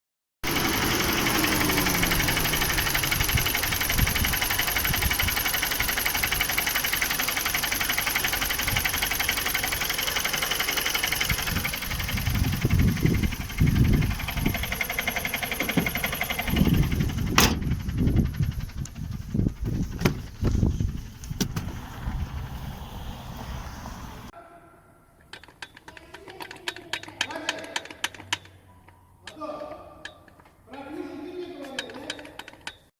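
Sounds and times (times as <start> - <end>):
car engine knocking: 0.5 - 22.4
uneven low thumps: 15.6 - 22.3.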